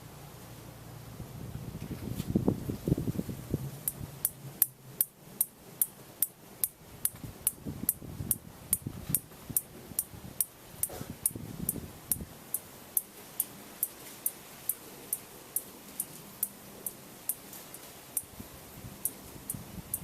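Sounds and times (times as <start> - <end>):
ceiling fan ticking: 2.9 - 20.0.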